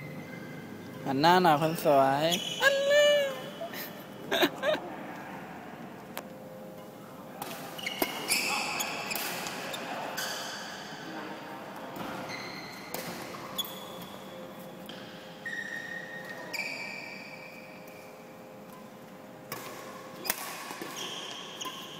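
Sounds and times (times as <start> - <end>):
shoes squeaking on court floor: 1.5 - 3.4, 7.4 - 10.9, 11.9 - 18.1, 20.2 - 21.9
rackets hitting shuttlecock: 9.1 - 9.6, 19.5 - 21.9.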